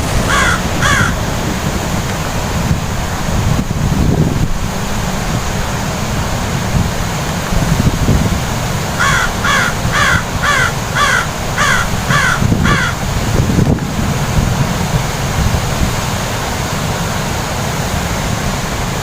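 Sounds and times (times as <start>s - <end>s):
bird giving harsh calls: 0.3s - 1.2s, 9.0s - 13.0s.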